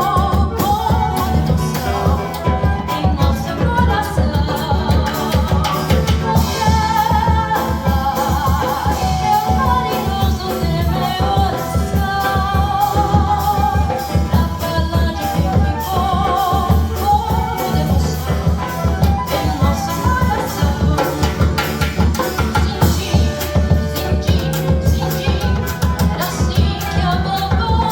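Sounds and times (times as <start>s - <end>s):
acoustic guitar: 0.0s - 27.9s
flute: 0.0s - 27.9s
hand percussion samba beat: 0.0s - 27.9s
person singing melody: 0.0s - 27.9s.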